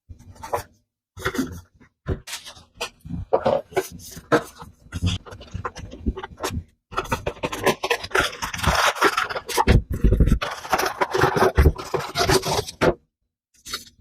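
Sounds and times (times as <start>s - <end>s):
rustling and scraping of wrapping: 0.1s - 14.0s
packaging clicks and knocks: 5.2s - 13.0s.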